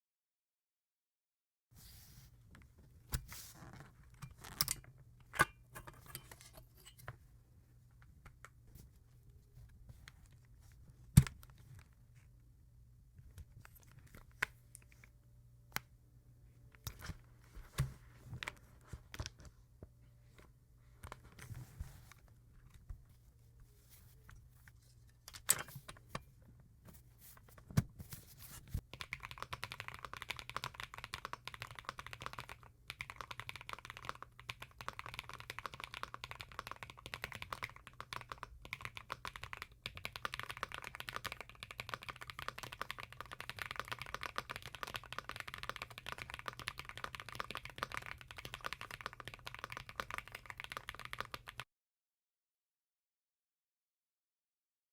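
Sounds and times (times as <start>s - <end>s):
fast typing on mechanical keyboard: 28.8s - 51.6s.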